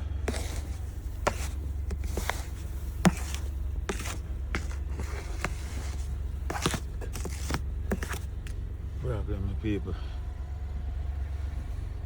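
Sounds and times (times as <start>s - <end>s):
crunching scrapes in snow: 0.2s - 8.6s.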